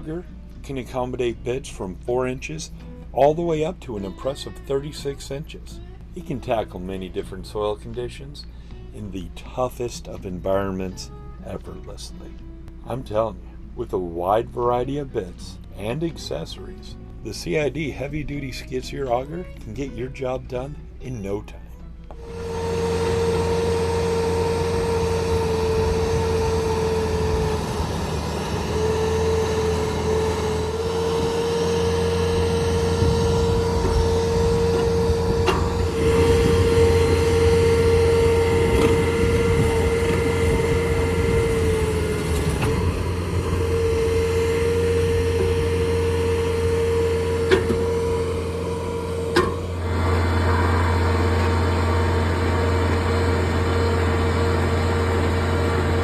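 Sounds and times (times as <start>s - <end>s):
engine running under load: 22.1s - 56.0s
hydraulic auger whine: 22.1s - 56.0s.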